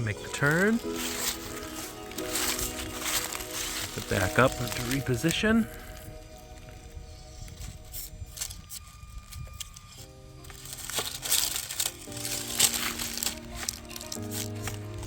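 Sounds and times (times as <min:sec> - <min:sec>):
toy car tires crunching on rock: 0:00.0 - 0:05.8, 0:07.2 - 0:15.0
slow held music notes: 0:00.0 - 0:15.0.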